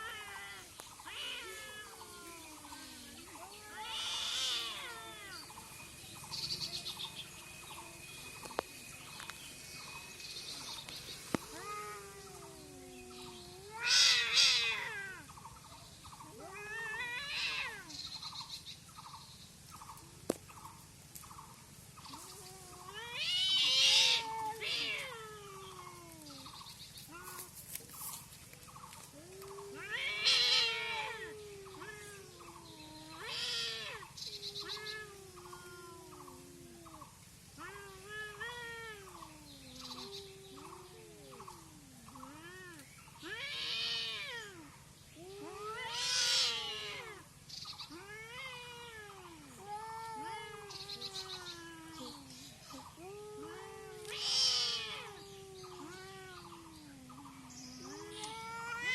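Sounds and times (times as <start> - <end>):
cats yowling and screeching: 0.0 - 8.6, 10.5 - 15.3, 16.2 - 18.0, 22.1 - 58.9.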